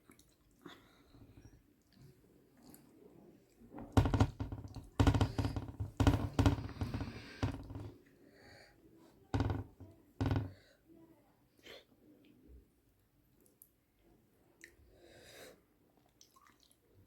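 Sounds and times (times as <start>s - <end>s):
dull thumps and knocks while eating: 3.8s - 8.0s, 9.4s - 10.6s.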